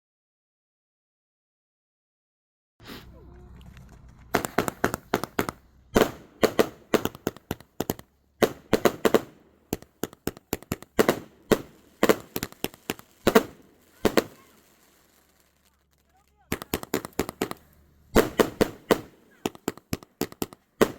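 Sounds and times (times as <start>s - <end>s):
firework shots banging: 3.1s - 20.9s.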